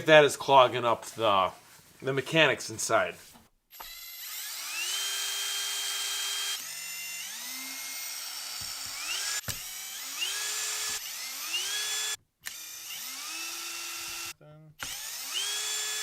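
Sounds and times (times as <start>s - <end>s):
cordless drill whining: 3.7s - 16.0s.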